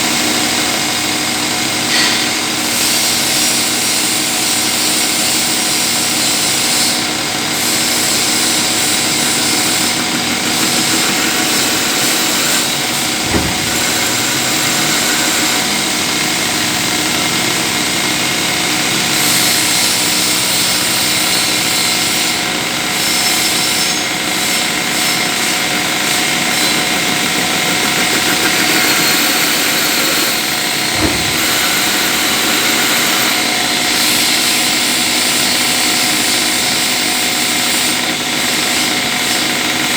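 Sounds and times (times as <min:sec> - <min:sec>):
lathe cutting hiss: 0:08.8 - 0:15.8, 0:26.6 - 0:33.5
brief knocks: 0:13.2 - 0:14.5, 0:30.8 - 0:31.9.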